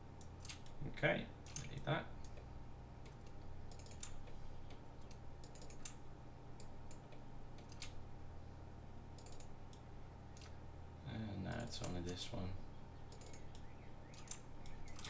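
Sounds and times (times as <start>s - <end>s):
steady low hum: 0.0s - 15.0s
keyboard and mouse clicks: 3.0s - 6.0s, 6.6s - 8.0s, 9.2s - 9.8s, 10.4s - 10.6s, 13.1s - 15.0s.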